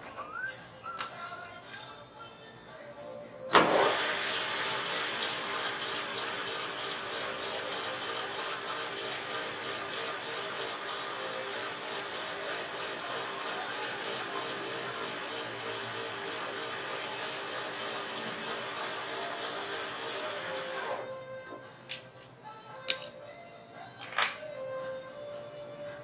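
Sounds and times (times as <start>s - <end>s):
pressure washer pump running: 3.5s - 21.1s
water spraying: 3.6s - 20.8s.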